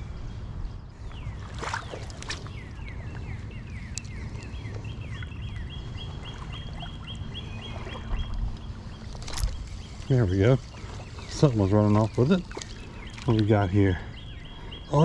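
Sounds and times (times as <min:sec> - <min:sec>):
low outdoor rumble: 0:00.0 - 0:15.0.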